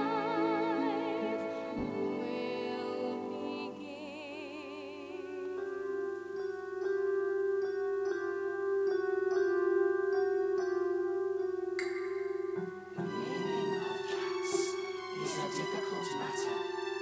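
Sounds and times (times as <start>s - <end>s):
person singing with vibrato: 0.0s - 6.3s, 12.8s - 17.0s
musical accompaniment: 0.0s - 17.0s
bell-like struck notes: 5.6s - 17.0s.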